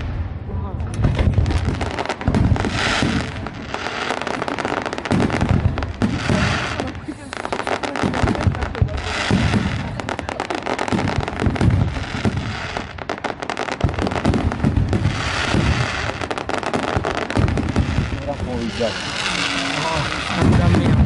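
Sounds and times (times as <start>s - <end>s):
booming firework shell bursts: 0.0s - 3.6s, 10.9s - 19.3s, 20.0s - 21.0s
rapid firework crackling: 0.0s - 21.0s.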